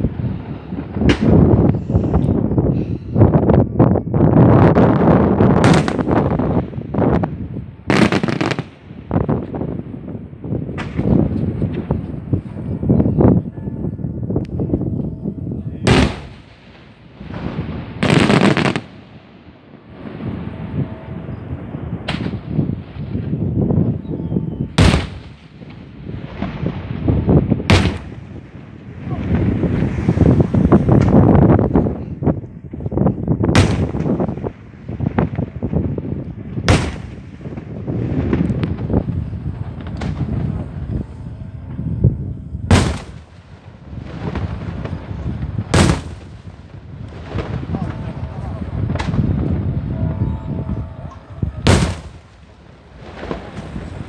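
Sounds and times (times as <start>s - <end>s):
rapid firework pops and rumble: 0.0s - 2.4s, 4.3s - 13.4s, 15.8s - 20.6s, 21.6s - 24.1s, 24.7s - 50.0s, 51.4s - 54.0s
loud firework bangs: 0.0s - 3.3s, 4.4s - 13.4s, 15.7s - 54.0s.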